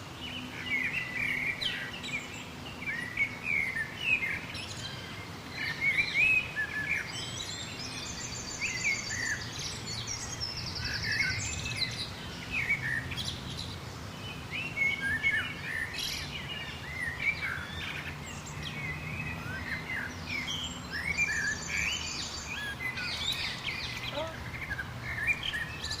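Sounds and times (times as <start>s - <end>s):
songbirds chirping: 0.0s - 26.0s
rapid high bird trills: 22.9s - 26.0s.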